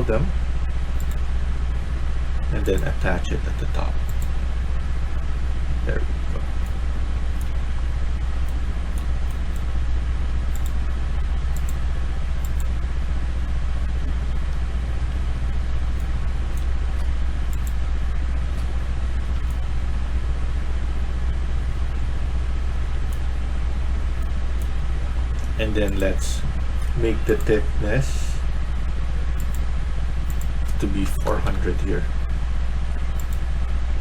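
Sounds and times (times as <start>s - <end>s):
low background hum: 0.0s - 34.0s
faint short clicks: 33.2s - 33.4s.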